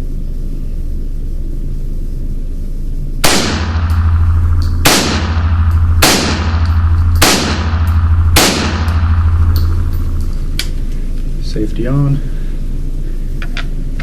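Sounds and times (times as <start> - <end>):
steady low hum: 0.0 - 14.0
rifle shots echoing indoors: 3.2 - 10.9.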